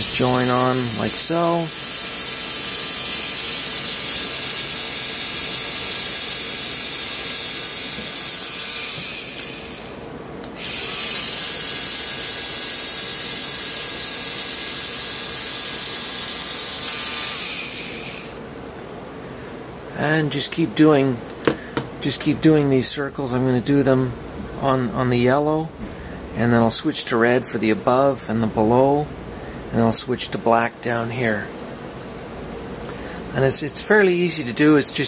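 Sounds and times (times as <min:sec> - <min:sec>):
pen motor whirring: 0:00.0 - 0:18.5.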